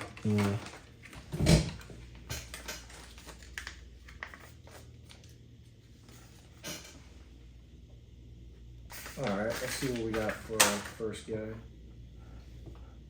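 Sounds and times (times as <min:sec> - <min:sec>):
plastic packaging being handled: 0:00.0 - 0:05.4, 0:08.9 - 0:11.0.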